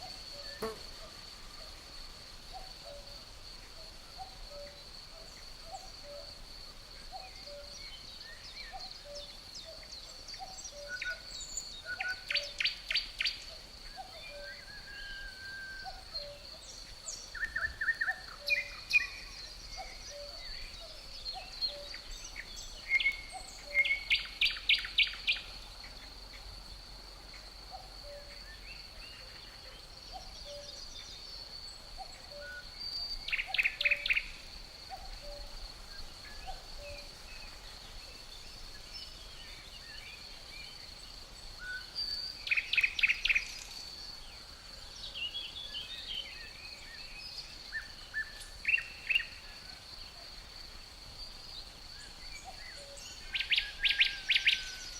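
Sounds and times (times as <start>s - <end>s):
high insect drone: 0.0s - 54.9s
songbirds singing: 0.0s - 54.9s
bird chirps: 32.0s - 35.6s, 41.6s - 43.9s.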